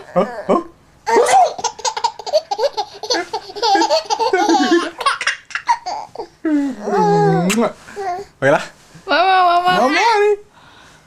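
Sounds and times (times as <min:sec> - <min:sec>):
sneeze: 0:01.1 - 0:01.6
baby laughing: 0:01.1 - 0:07.1.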